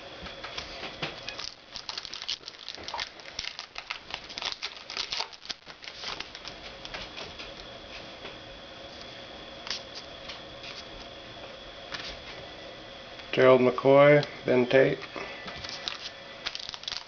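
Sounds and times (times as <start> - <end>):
cards being flipped through: 1.4 - 6.6, 15.6 - 17.0.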